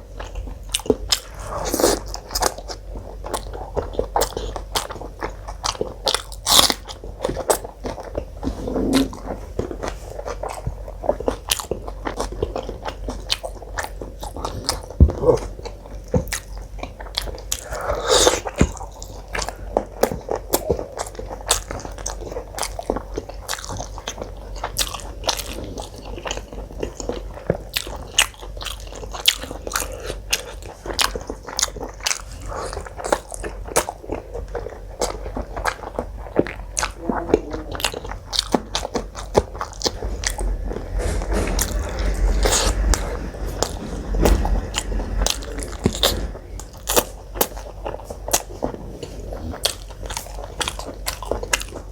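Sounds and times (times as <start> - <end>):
person chewing crunchy food: 0.0 - 51.9
low rumble: 37.1 - 50.5.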